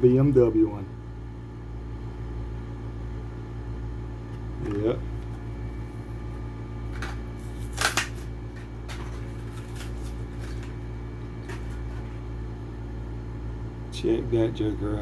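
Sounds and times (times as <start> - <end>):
steady low hum: 0.0 - 15.0
blister pack being torn open: 7.6 - 8.3.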